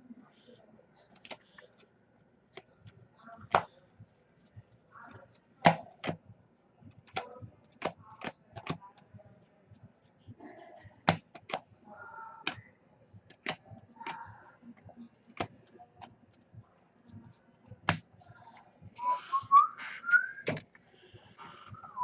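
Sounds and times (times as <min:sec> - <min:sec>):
trading cards clicking on table: 0:07.0 - 0:09.0, 0:13.3 - 0:14.3.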